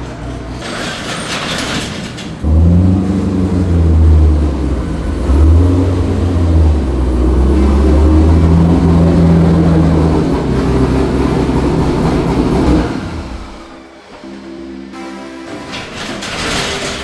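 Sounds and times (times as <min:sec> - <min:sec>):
car engine running: 0:02.4 - 0:13.9
rushing noise: 0:02.4 - 0:14.3.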